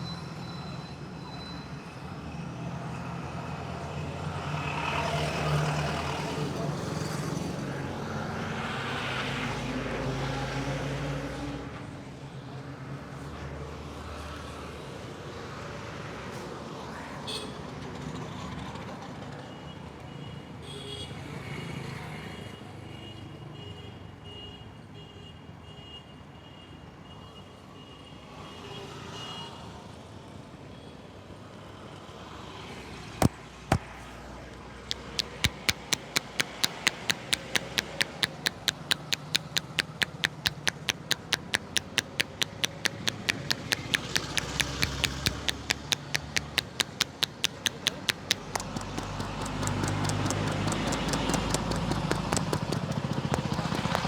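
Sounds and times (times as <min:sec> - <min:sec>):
street traffic: 0:33.2 - 0:54.0
rhythmic hand slaps: 0:34.9 - 0:54.0.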